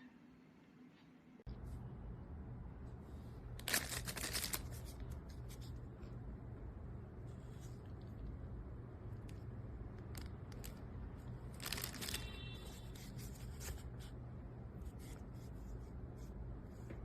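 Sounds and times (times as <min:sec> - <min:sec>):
packaging tearing: 0:03.6 - 0:04.9, 0:11.5 - 0:12.3
packaging crinkling: 0:03.6 - 0:05.6, 0:10.0 - 0:13.6.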